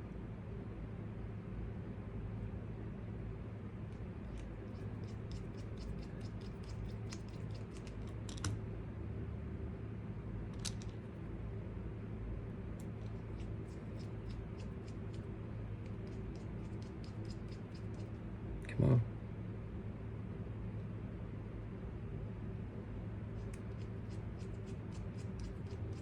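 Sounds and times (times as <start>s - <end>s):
steady low hum: 0.0s - 26.0s
light clicks of parts and tools: 10.5s - 11.0s.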